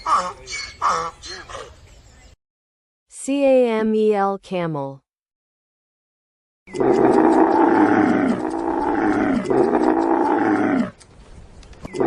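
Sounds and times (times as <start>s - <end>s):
camel bellowing: 6.7s - 11.0s.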